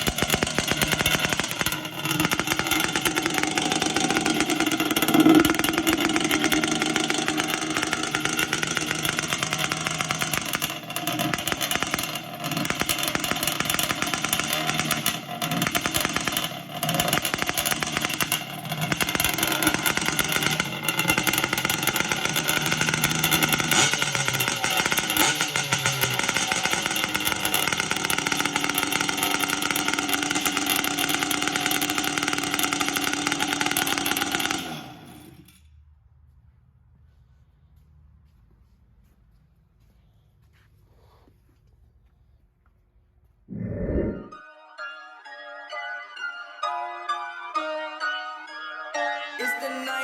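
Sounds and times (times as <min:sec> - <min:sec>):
two-stroke engine revving: 0:00.0 - 0:35.6.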